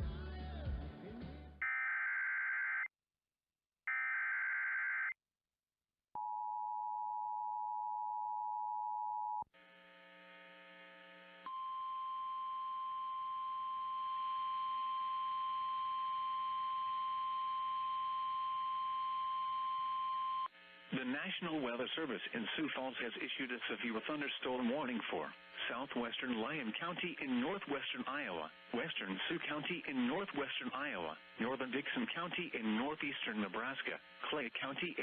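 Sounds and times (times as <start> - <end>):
steady warning alarm tone: 11.4 - 20.8
radio static: 20.6 - 35.0.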